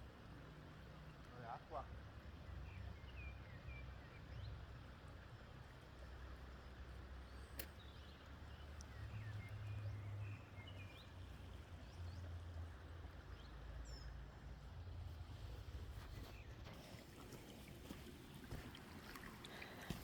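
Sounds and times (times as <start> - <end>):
small birds chirping: 6.0 - 14.4.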